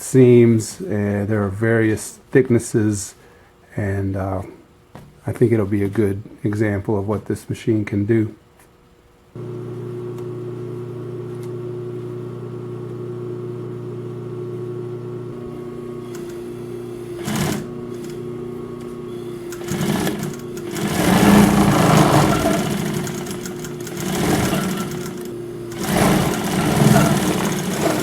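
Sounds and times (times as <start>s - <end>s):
sewing machine motor humming: 9.4s - 28.0s
sewing machine stitching: 16.0s - 28.0s.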